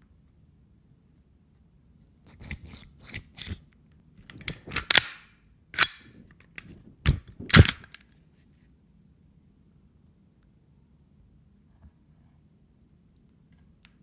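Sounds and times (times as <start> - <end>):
pistol clicks and snaps: 2.3 - 3.6, 4.3 - 8.0.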